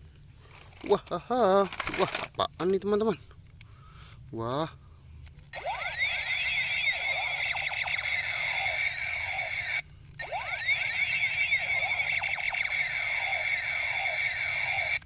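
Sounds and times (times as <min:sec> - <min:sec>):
toy gun whistling sweeps: 0:05.6 - 0:15.0.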